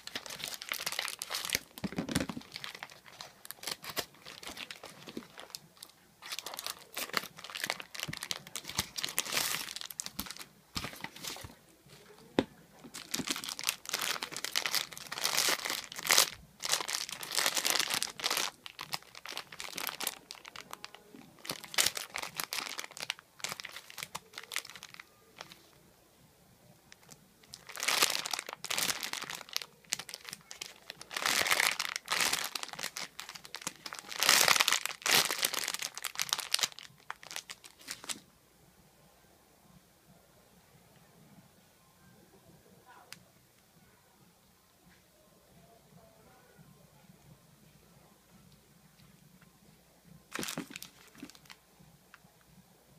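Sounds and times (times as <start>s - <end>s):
packaging crinkled and torn: 0.0s - 11.6s, 12.9s - 25.7s, 26.9s - 38.2s, 50.3s - 51.6s.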